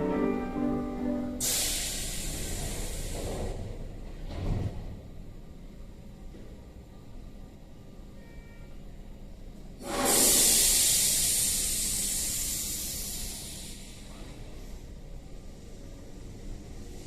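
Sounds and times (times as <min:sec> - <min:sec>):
compressed air hiss from train: 0:01.0 - 0:03.8, 0:09.8 - 0:17.0.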